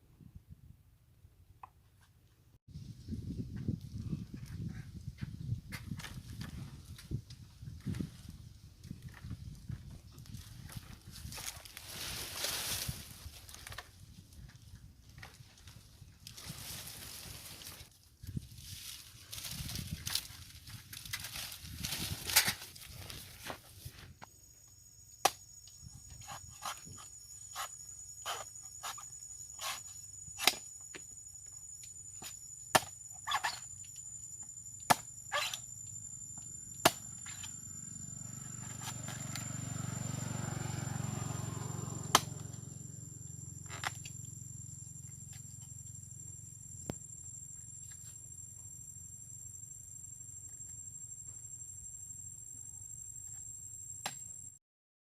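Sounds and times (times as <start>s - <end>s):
steady high-pitched whine: 18.6s - 54.6s.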